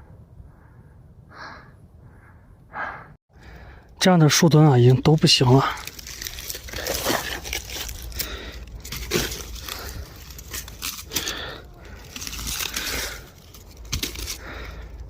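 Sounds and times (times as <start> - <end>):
brushing through undergrowth: 5.1 - 15.0
footsteps crunching in undergrowth: 5.3 - 14.9.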